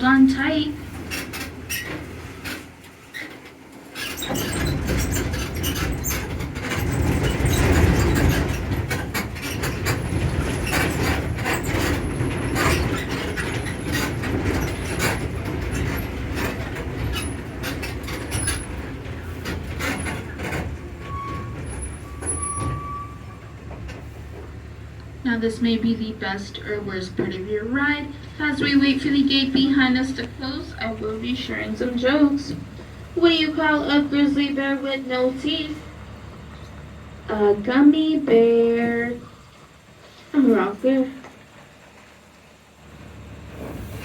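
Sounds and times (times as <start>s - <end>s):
cars rattling and clattering: 0.0s - 44.0s
tram rumbling over grates: 0.0s - 44.0s
brief squeaks: 21.0s - 23.6s.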